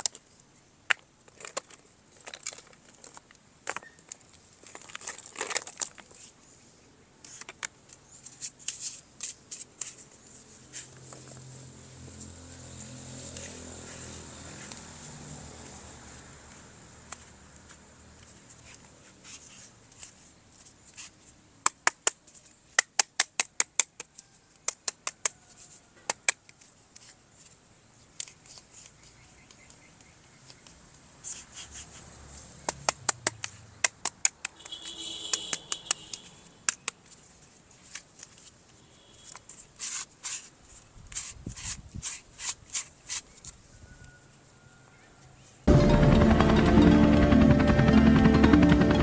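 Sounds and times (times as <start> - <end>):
scratching and rustling: 1.2 - 6.6, 7.2 - 14.9, 16.6 - 29.2, 30.5 - 34.5, 36.1 - 43.6.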